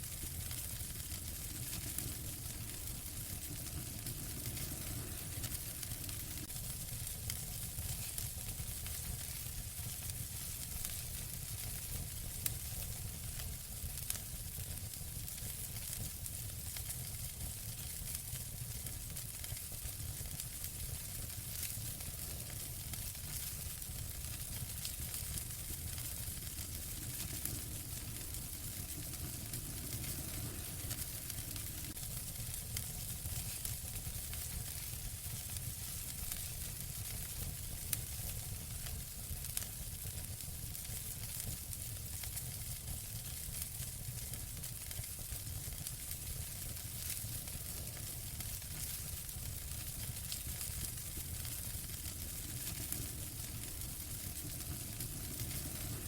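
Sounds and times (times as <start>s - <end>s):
wood fire crackling and popping: 0.0s - 56.0s.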